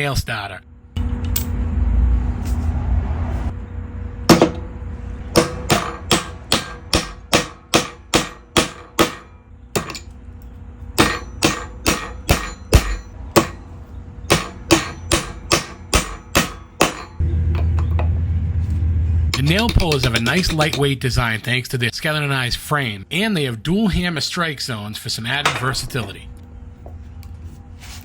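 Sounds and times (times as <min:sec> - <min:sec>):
low steady hum: 0:00.0 - 0:28.0
hammer striking nails: 0:04.3 - 0:04.6, 0:05.4 - 0:10.0, 0:11.0 - 0:13.6, 0:14.3 - 0:17.2.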